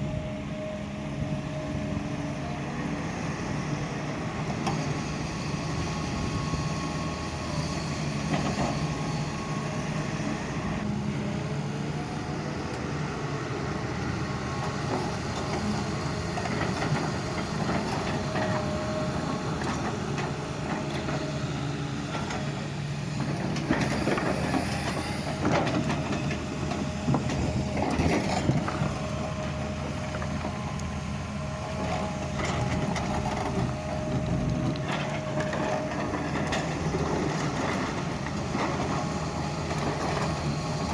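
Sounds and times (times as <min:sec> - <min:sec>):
excavator diesel engine running: 0:00.0 - 0:40.9
clanks and scrapes of digging: 0:22.1 - 0:29.5.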